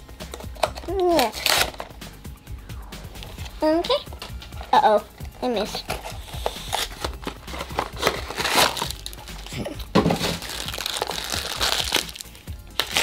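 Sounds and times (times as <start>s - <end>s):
plastic bag crinkling: 6.7s - 13.0s.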